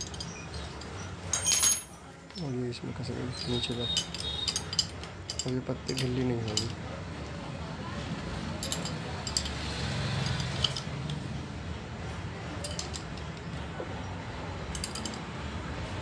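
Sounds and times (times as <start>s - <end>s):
spanner clinking on metal bolts: 0.0s - 2.5s, 3.2s - 6.8s, 8.6s - 9.6s, 10.2s - 11.2s, 12.6s - 13.7s, 14.7s - 15.3s
low background hum: 0.0s - 16.0s.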